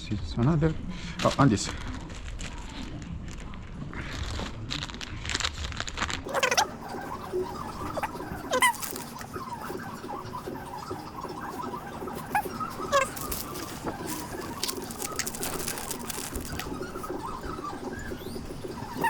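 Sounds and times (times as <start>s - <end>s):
squeaky falling chirps: 6.3s - 19.0s.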